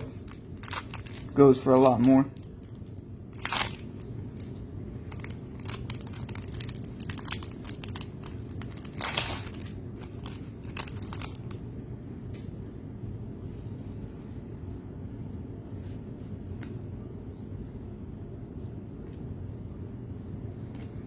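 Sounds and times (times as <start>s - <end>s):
cards being handled: 0.0s - 2.8s, 3.4s - 11.6s
wrappers crinkling: 0.0s - 11.6s.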